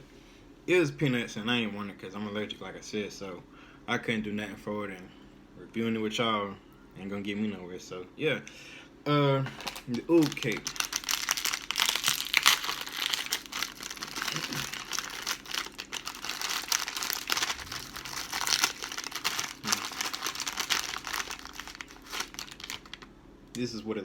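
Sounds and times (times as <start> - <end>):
plastic wrapper crinkling: 9.5 - 23.6.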